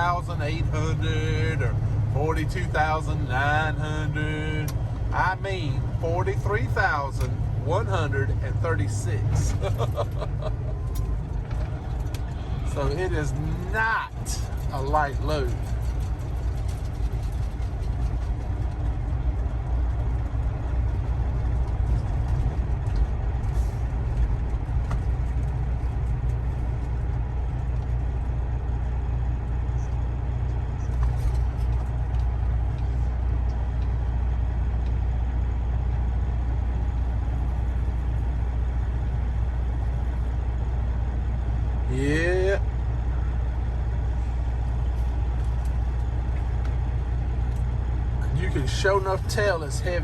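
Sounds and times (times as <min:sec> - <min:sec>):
truck engine and road drone: 0:00.0 - 0:50.0
light clicks and rattles: 0:14.2 - 0:28.0, 0:29.8 - 0:34.0.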